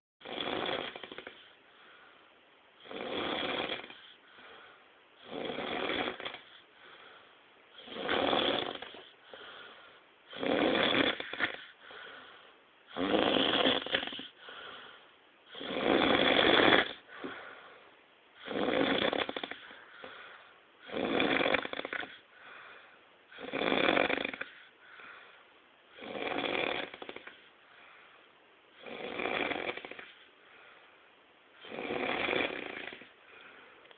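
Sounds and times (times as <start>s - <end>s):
person snoring: 0.2s - 1.6s, 2.8s - 4.6s, 5.2s - 6.6s, 7.8s - 12.2s, 12.9s - 14.9s, 15.5s - 17.5s, 18.4s - 20.2s, 20.8s - 22.2s, 23.3s - 24.7s, 26.0s - 27.5s, 28.8s - 30.3s, 31.6s - 33.2s
faint breathing: 1.2s - 2.5s, 3.8s - 5.3s, 6.2s - 8.0s, 8.7s - 10.4s, 11.1s - 13.0s, 13.8s - 15.8s, 16.7s - 18.5s, 19.1s - 21.0s, 21.8s - 23.5s, 24.3s - 25.6s, 26.9s - 28.8s, 29.8s - 33.9s.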